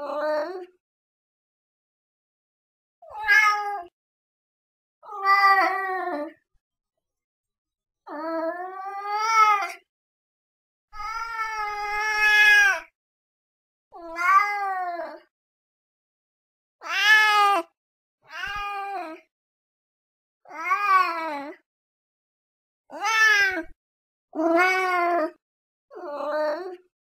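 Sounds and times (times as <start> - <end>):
cat meowing: 3.0 - 3.9, 11.0 - 12.8, 14.0 - 14.9, 18.3 - 19.2, 20.5 - 21.5, 22.9 - 23.8.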